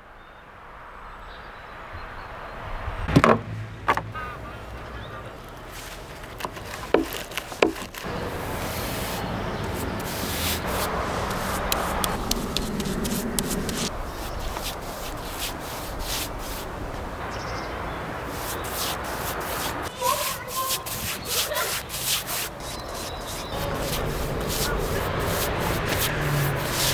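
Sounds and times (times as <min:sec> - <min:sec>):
sharp knocks: 0:03.1 - 0:04.2
rough scraping of wood: 0:05.2 - 0:17.1, 0:18.3 - 0:26.9.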